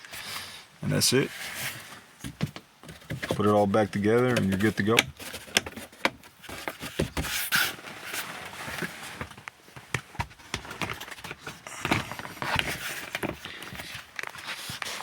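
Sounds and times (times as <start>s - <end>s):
rustling: 0.0s - 15.0s
clicks and knocks of handling: 2.2s - 7.3s.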